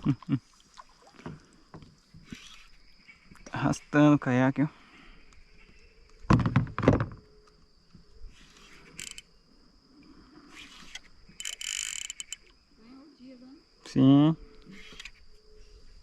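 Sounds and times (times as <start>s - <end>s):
high-pitched insect buzz: 8.2s - 16.0s.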